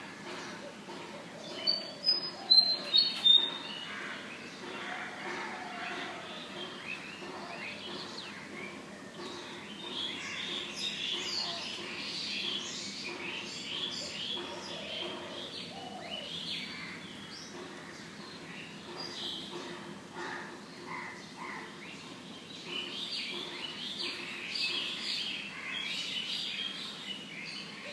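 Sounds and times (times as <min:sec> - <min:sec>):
birds chirping: 0:00.0 - 0:27.9.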